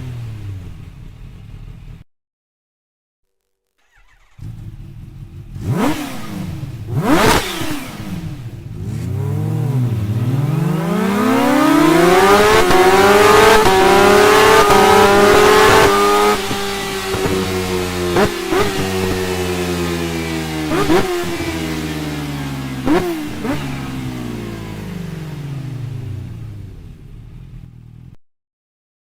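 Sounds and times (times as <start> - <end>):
motorcycle engine revving: 0.0 - 2.0, 3.8 - 28.2.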